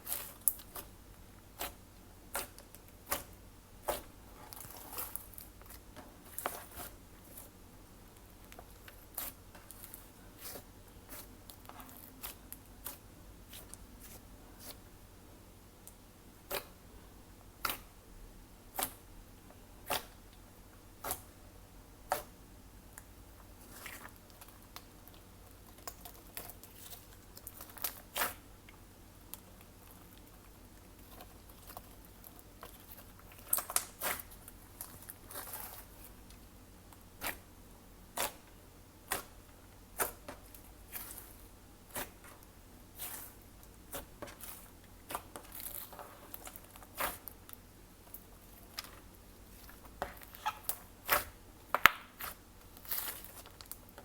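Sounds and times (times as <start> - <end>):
slime squishing with clicks and pops: 32.6 - 34.9, 49.9 - 52.4.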